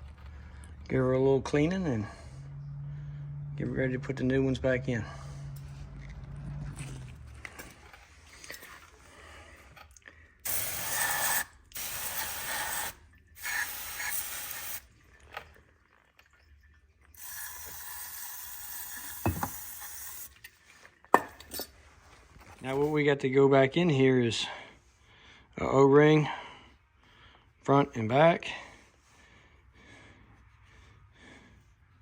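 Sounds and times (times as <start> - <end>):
cleaning spray hissing: 10.5 - 14.8.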